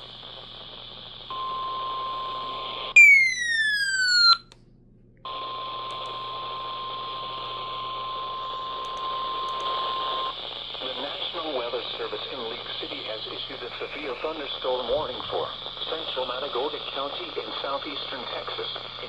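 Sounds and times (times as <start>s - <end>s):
falling electronic sweep: 3.0s - 4.4s
steady warning alarm tone: 3.0s - 4.4s.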